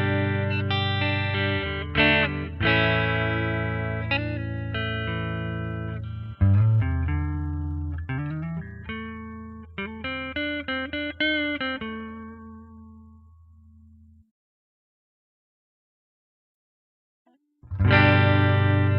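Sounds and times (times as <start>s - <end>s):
clean electric guitar: 0.0s - 14.3s, 17.3s - 18.9s.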